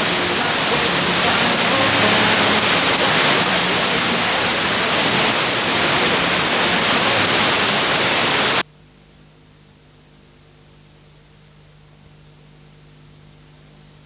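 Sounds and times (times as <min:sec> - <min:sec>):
loud static hiss: 0:00.0 - 0:09.1.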